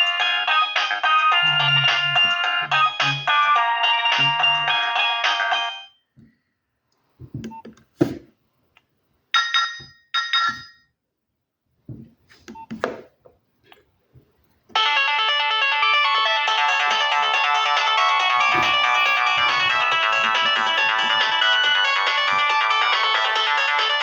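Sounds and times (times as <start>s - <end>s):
polyphonic phone ringtone: 0.0s - 6.0s, 9.4s - 10.9s, 14.8s - 24.0s.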